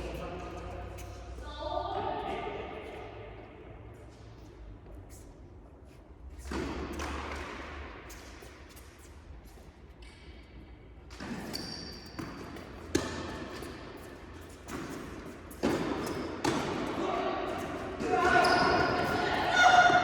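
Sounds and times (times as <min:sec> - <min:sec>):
racket hitting tennis ball: 0:06.5 - 0:07.7, 0:12.2 - 0:14.0, 0:14.6 - 0:17.1
tennis ball bouncing: 0:12.2 - 0:17.0.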